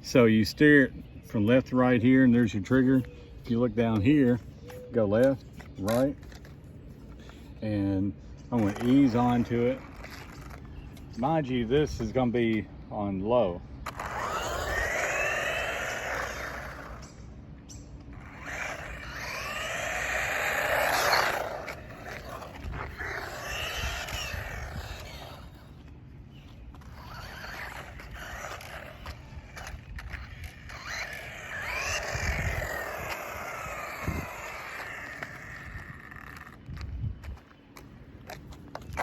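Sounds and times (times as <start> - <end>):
electric motor whine of toy car: 13.8 - 17.2, 18.1 - 25.9, 26.7 - 36.8.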